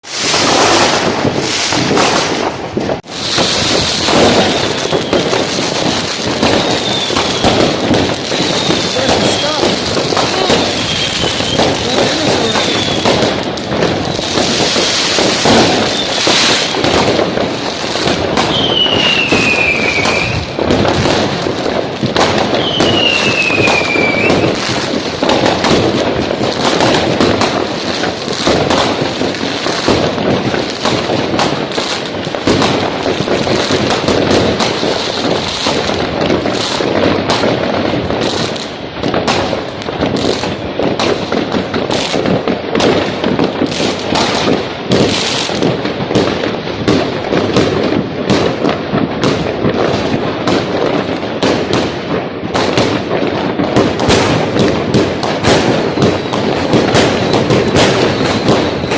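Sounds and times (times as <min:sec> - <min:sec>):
falling firework whistle: 0:00.0 - 0:21.2, 0:22.2 - 0:24.9, 0:55.4 - 0:58.9
fireworks banging and crackling: 0:00.0 - 0:58.9.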